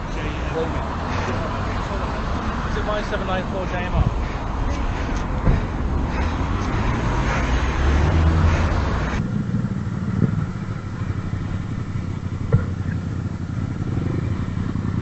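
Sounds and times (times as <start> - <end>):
motorcycle engine running: 0.0 - 15.0
wind and road noise: 0.0 - 15.0.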